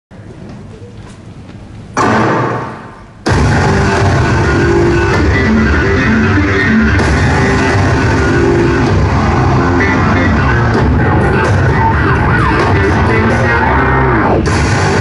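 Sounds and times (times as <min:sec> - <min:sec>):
rock music with distorted guitar: 0:03.3 - 0:15.0.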